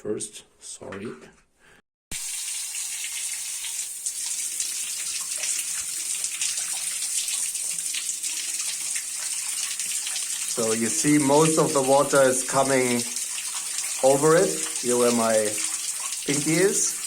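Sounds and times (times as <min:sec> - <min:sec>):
shower water splashing: 0:02.1 - 0:17.0.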